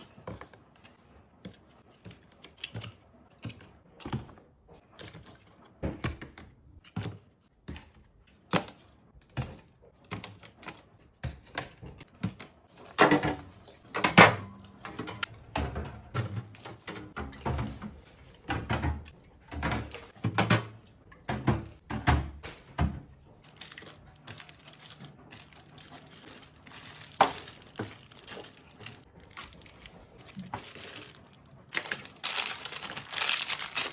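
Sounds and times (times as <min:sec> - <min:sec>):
containers knocking and clunking: 0:11.2 - 0:23.2, 0:24.2 - 0:33.9
packaging crinkling: 0:23.4 - 0:33.9.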